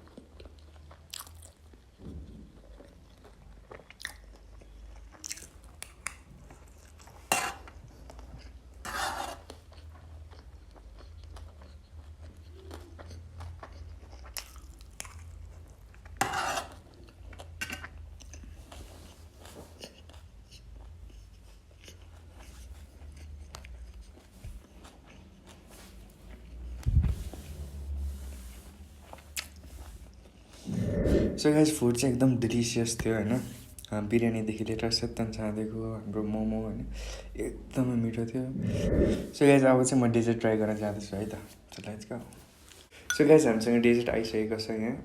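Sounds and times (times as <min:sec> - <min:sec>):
chewing and mouth sounds: 0:00.0 - 0:08.8, 0:09.4 - 0:27.2, 0:29.1 - 0:31.6, 0:38.6 - 0:39.4
low hum: 0:30.6 - 0:31.5, 0:38.5 - 0:39.4.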